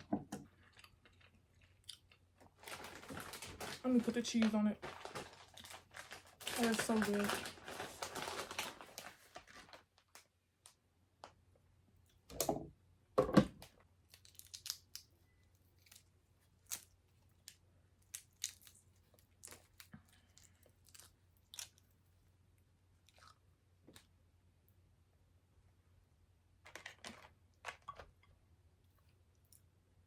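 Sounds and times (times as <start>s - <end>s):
chewing and crunching: 0.4s - 3.8s, 14.1s - 24.1s.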